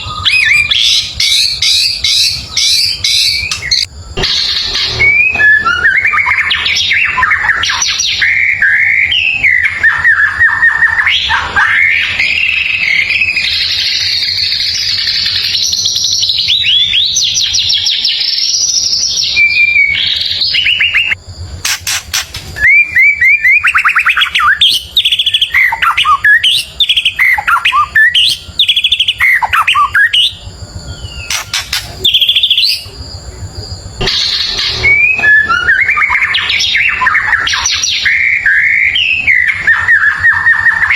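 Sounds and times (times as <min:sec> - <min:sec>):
bird singing trills and whistles: 0:00.0 - 0:40.9
sharp clicks: 0:21.6 - 0:22.6, 0:31.3 - 0:32.1.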